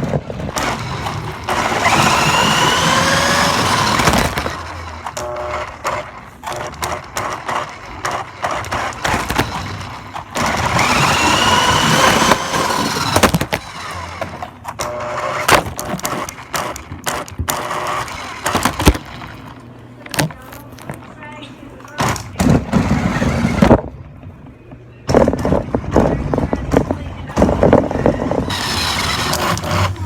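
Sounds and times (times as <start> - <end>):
rc car motor whine: 0.0 - 18.9, 22.8 - 23.8, 27.4 - 30.0
rc car clattering knocks: 5.9 - 14.8.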